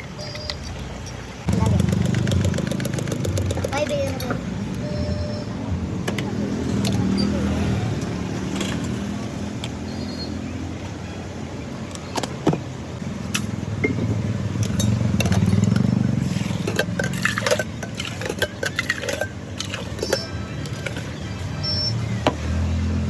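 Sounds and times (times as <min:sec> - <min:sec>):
sharp clicks and knocks: 0:01.5 - 0:04.8.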